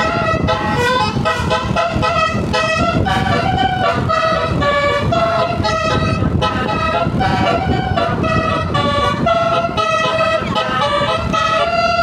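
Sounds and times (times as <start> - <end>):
bus musical horn playing a tune: 0.0 - 12.0
engine rumble: 0.0 - 12.0
street noise: 0.0 - 12.0.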